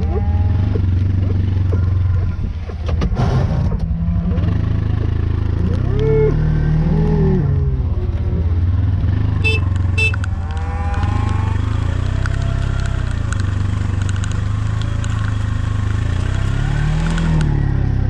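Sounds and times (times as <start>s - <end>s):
cattle mooing: 0.0s - 2.4s, 9.5s - 13.2s
vehicle engine running: 0.0s - 18.0s.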